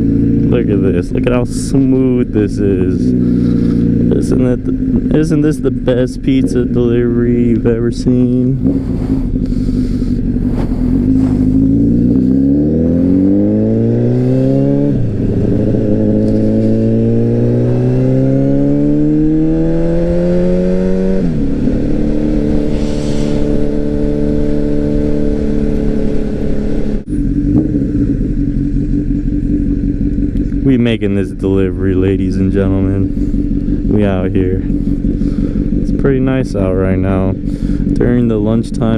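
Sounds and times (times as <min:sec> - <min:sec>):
motorcycle engine accelerating: 0:00.0 - 0:38.9.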